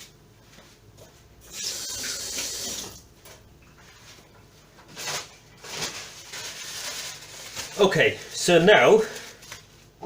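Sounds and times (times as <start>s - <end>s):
tap water running: 1.4s - 3.1s
rustling handling noises: 3.2s - 10.0s.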